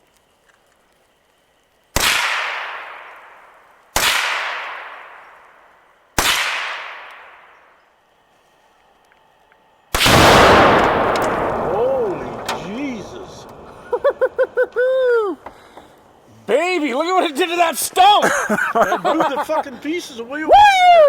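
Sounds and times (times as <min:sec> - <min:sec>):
rifle shots with echo: 0:02.0 - 0:05.6, 0:06.2 - 0:07.6, 0:09.9 - 0:13.8.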